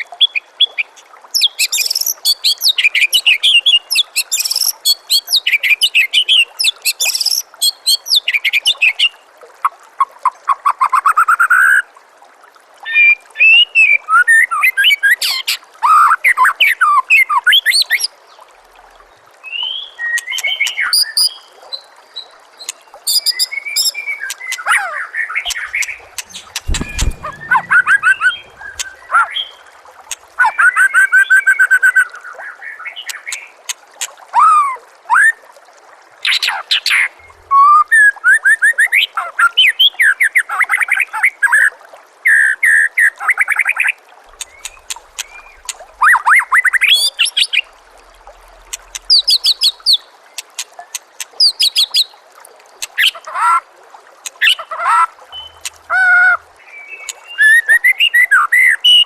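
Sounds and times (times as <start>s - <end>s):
water trickling: 0.0s - 59.0s
songbird singing whistles and trills: 22.6s - 29.6s, 55.3s - 59.0s.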